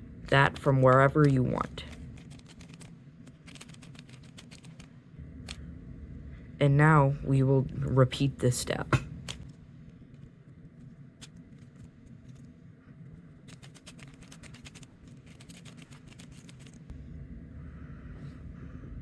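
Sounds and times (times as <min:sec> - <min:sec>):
low steady hum: 0:00.0 - 0:19.0
puzzle cube plastic clicking: 0:00.9 - 0:04.9.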